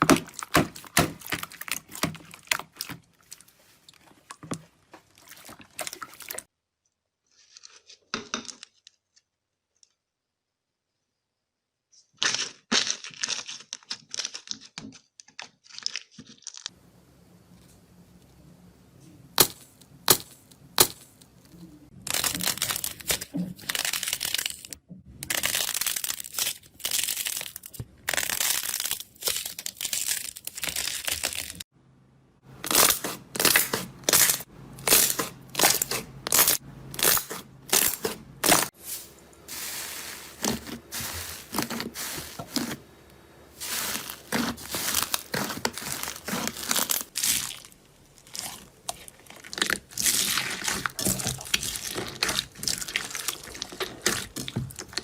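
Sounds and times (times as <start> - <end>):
slime crunchy squishes: 0.0 - 6.5, 19.4 - 31.6, 32.6 - 55.0.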